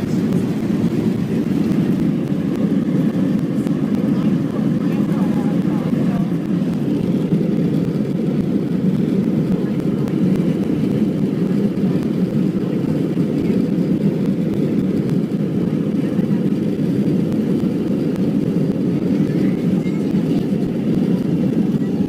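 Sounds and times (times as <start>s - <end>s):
airliner cabin rumble: 0.0s - 22.0s.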